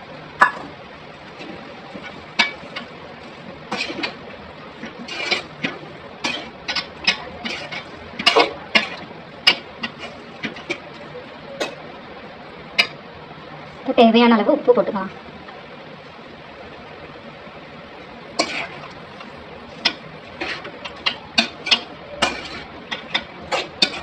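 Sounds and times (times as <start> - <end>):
metal ladle scraping a pan: 1.3 - 4.2, 4.8 - 11.0, 18.3 - 24.0.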